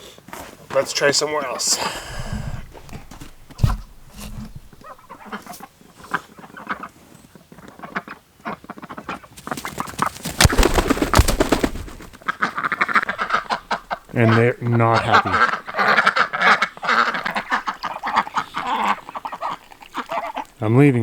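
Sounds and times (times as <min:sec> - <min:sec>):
poultry calling: 0:01.0 - 0:20.9
knocks and rustling: 0:02.1 - 0:05.8, 0:09.4 - 0:12.2
thump: 0:02.2 - 0:04.9.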